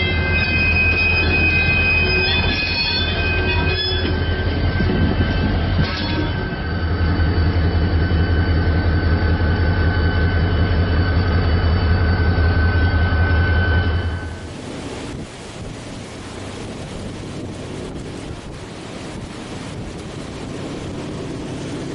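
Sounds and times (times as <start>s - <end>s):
train wheels squealing: 0.0s - 14.4s
train rumbling by: 0.0s - 21.9s.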